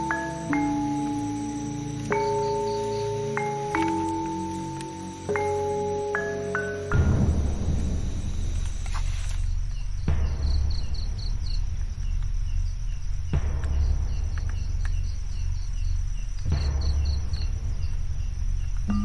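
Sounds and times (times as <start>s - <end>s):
insects chirping and trilling: 0.0s - 19.0s
low rumble: 6.9s - 19.0s.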